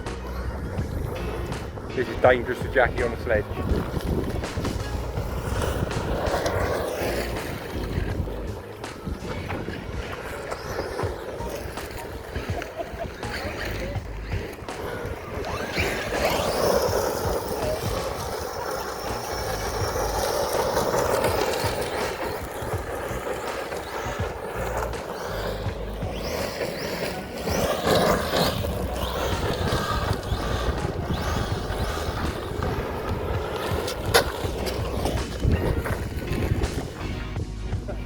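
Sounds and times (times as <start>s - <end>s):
background music: 0.0s - 38.0s
toy truck tyres on rough ground: 0.0s - 38.0s.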